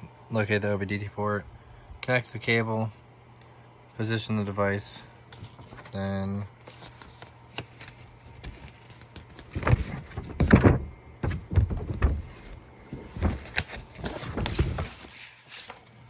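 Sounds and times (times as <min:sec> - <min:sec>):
soft handling thumps and knocks: 0:09.6 - 0:13.5.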